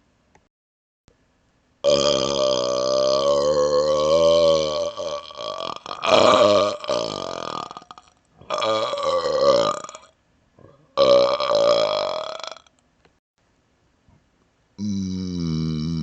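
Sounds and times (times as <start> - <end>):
man burping: 1.8 - 12.7, 14.8 - 16.0.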